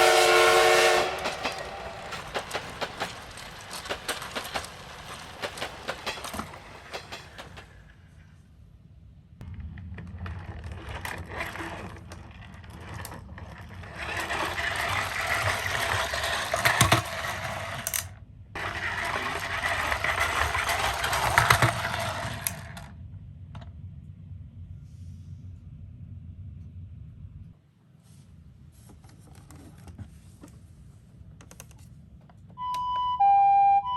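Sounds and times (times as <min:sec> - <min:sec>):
toy cars rattling on cardboard: 0:00.0 - 0:07.9, 0:09.4 - 0:22.9
steady low hum: 0:22.9 - 0:27.6.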